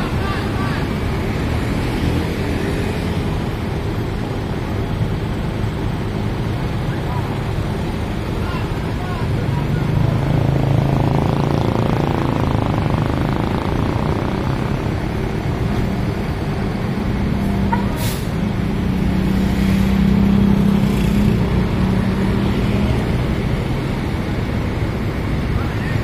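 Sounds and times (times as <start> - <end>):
diesel bus engine running: 0.0 - 26.0.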